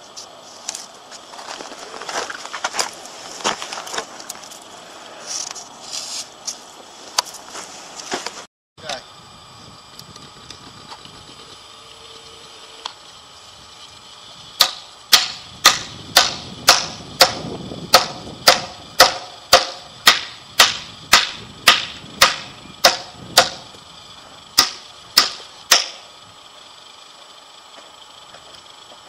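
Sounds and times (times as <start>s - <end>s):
hammer striking steel bracket: 14.6s - 17.4s, 18.0s - 23.6s, 24.6s - 26.0s.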